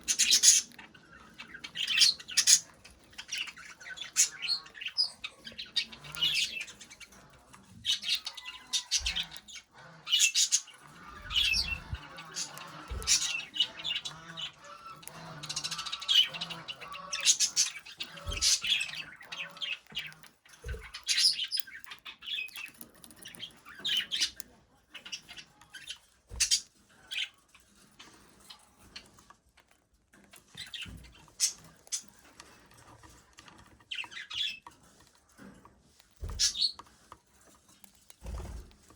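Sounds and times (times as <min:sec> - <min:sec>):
budgerigar chirping and squawking: 0:00.0 - 0:27.3, 0:30.6 - 0:32.2, 0:33.9 - 0:34.6, 0:36.3 - 0:36.8.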